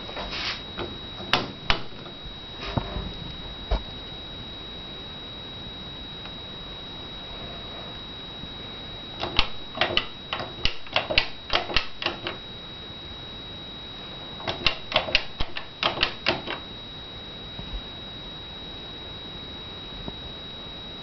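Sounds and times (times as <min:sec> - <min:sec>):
sharp irregular clicks: 0:09.2 - 0:12.4, 0:14.5 - 0:16.6.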